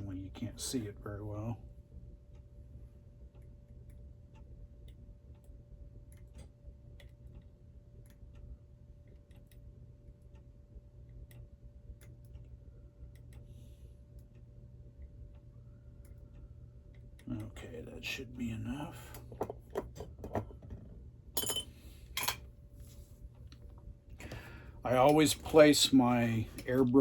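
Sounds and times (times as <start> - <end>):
faint hum: 0.0 - 27.0.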